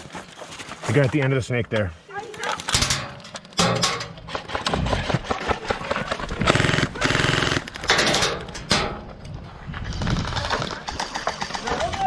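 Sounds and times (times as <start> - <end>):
airsoft gun automatic fire: 6.4 - 8.5.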